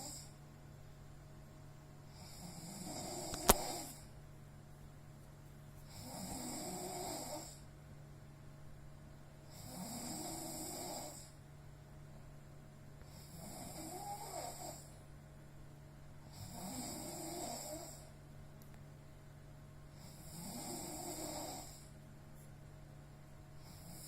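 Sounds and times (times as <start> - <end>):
person snoring: 0.0 - 0.4, 2.1 - 4.1, 5.9 - 7.7, 9.5 - 11.4, 13.0 - 14.9, 16.3 - 18.1, 19.9 - 22.0.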